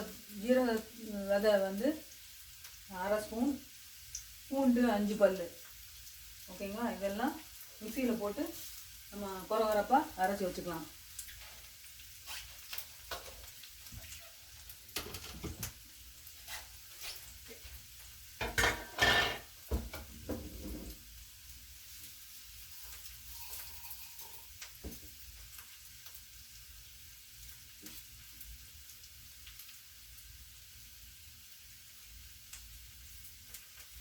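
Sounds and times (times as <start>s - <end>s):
beans sizzling in oil: 0.0s - 34.0s.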